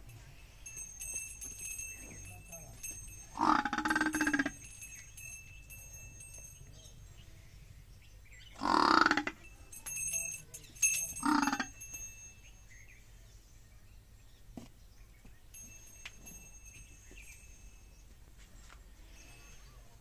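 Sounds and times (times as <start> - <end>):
water buffalo calf calling: 3.3 - 4.6, 8.6 - 9.5, 11.2 - 11.8.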